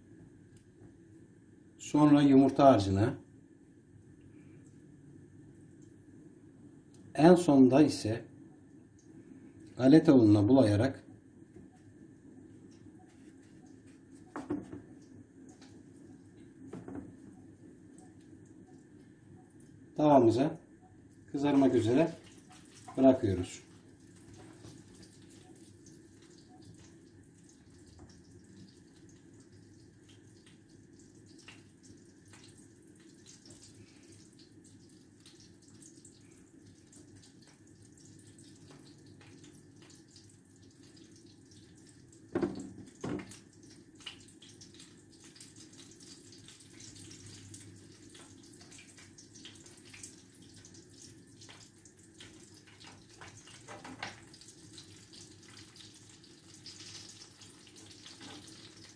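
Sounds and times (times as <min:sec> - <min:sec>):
oil sizzling in a pan: 0:22.2 - 0:58.9.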